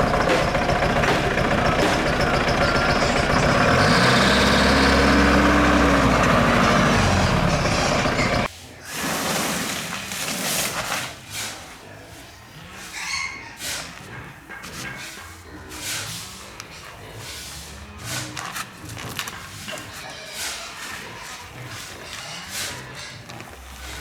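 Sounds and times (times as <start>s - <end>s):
heavy truck engine revving: 0.0s - 8.5s
scattered knocks and clatter: 0.0s - 8.5s.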